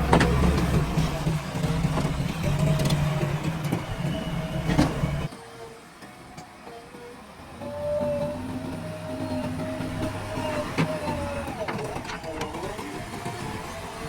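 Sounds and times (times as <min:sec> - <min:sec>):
diesel engine running: 0:00.0 - 0:05.3.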